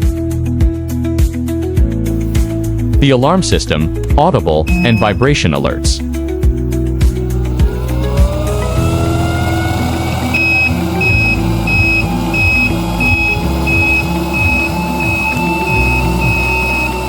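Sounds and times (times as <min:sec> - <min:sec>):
blower motor whining: 0:02.1 - 0:05.4, 0:06.0 - 0:17.0
high-pitched alarm beeps: 0:02.4 - 0:05.4, 0:08.1 - 0:17.0.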